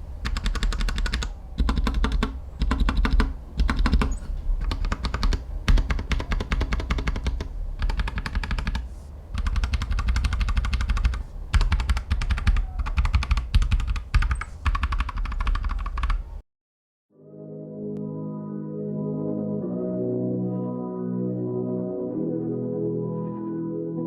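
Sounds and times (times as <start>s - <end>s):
mechanical keyboard typing: 0.2s - 16.2s.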